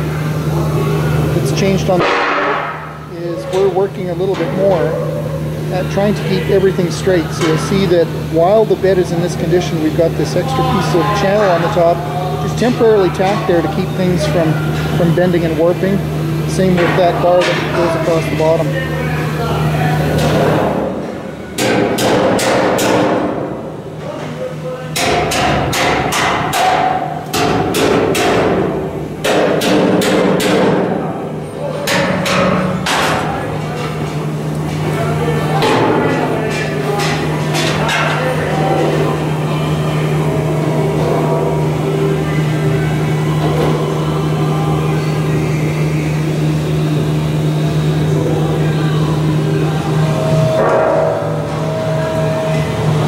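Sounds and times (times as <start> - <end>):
loud low machine hum: 0.0 - 53.0
hammer striking metal: 2.0 - 3.0, 25.0 - 28.6.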